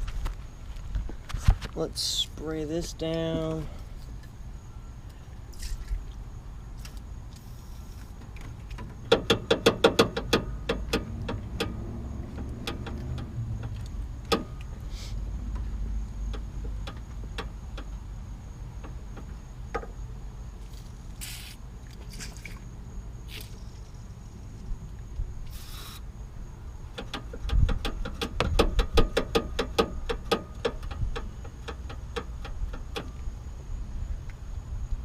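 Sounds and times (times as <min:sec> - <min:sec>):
spray hissing: 0:21.2 - 0:21.6, 0:25.5 - 0:26.0.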